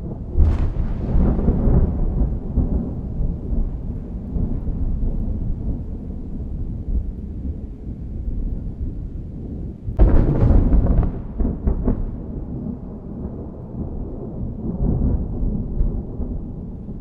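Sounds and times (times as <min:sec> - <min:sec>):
thunder crack: 0:00.0 - 0:06.0, 0:10.0 - 0:17.0
rolling thunder rumble: 0:00.0 - 0:17.0.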